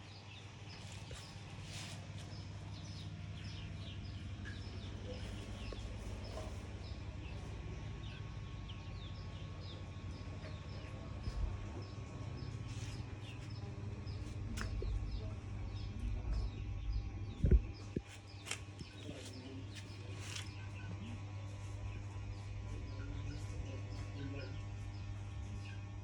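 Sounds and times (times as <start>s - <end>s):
small birds chirping: 0.0s - 26.0s
steady low hum: 0.0s - 26.0s.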